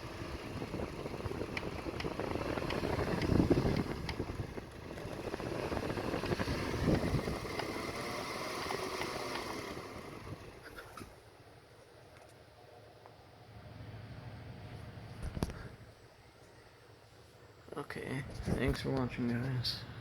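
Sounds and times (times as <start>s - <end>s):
low gusts of air: 0.0s - 8.9s
small fan winding down: 0.0s - 11.2s, 13.4s - 15.9s.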